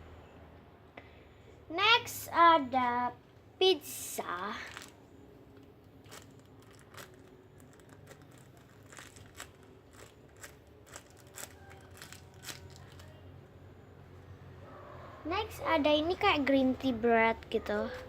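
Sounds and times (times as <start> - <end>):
squishy toy crinkling: 4.6 - 5.0, 5.9 - 13.2.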